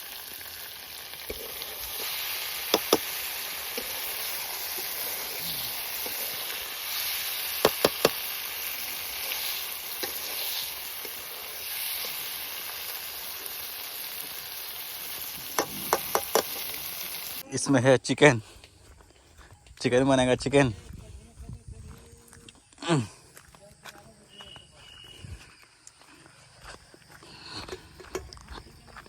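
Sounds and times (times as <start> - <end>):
chicken sizzling in oil: 0.0 - 17.4.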